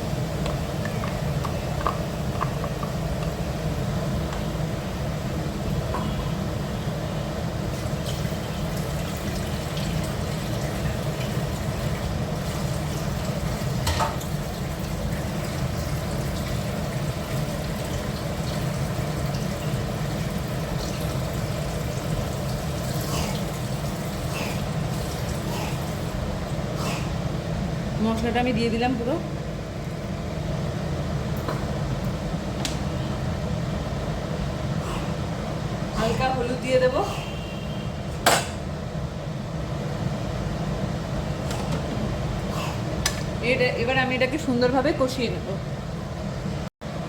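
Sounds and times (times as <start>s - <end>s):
wet stirring and cooking: 0.0s - 4.7s, 7.7s - 27.4s.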